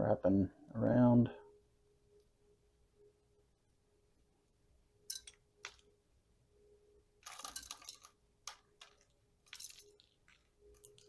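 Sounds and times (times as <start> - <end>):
wire scraping and crinkling: 7.2 - 11.0.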